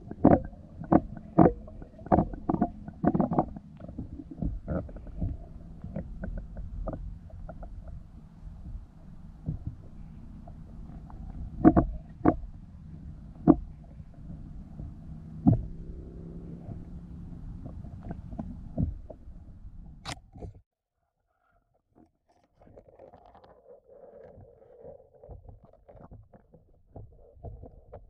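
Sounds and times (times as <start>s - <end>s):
muffled low rumble: 0.0s - 20.6s.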